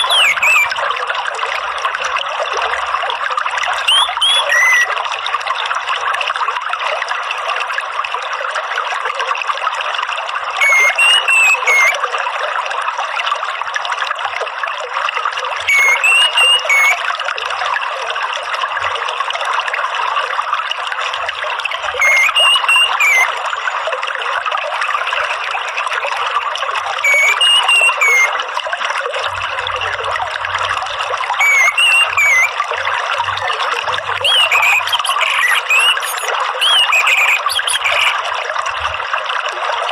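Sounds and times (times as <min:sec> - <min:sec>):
bird whistled call: 0:00.0 - 0:00.8, 0:03.8 - 0:05.0, 0:10.6 - 0:12.0, 0:15.6 - 0:17.0, 0:22.0 - 0:23.3, 0:27.0 - 0:28.4, 0:31.4 - 0:32.6, 0:34.2 - 0:38.2
water trickling: 0:00.0 - 0:39.9.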